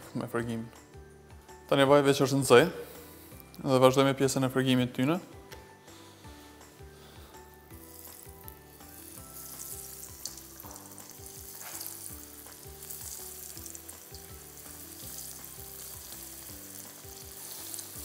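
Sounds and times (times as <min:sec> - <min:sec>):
chicken frying in hot oil: 0:08.9 - 0:18.0.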